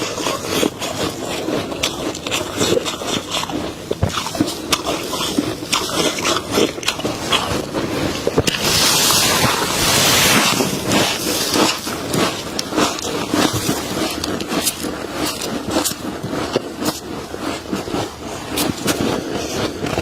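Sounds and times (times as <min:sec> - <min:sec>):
crunching frost: 0:00.0 - 0:20.0
scraping rush: 0:00.0 - 0:20.0.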